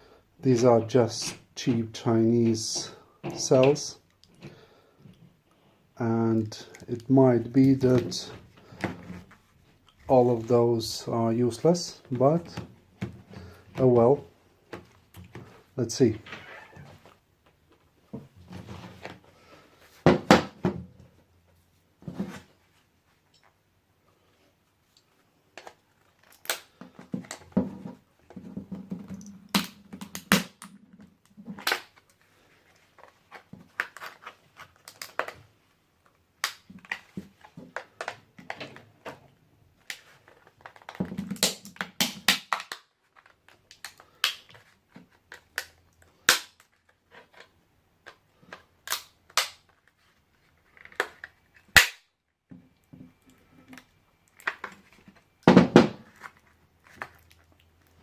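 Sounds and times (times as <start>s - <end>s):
plastic crunching and scraping: 25.5s - 51.8s, 52.9s - 58.0s
plastic casing snapping and cracking: 25.6s - 27.5s, 29.2s - 32.1s, 33.7s - 35.4s, 36.4s - 38.6s, 39.8s - 44.7s, 45.3s - 47.0s, 48.0s - 49.9s, 50.7s - 52.1s.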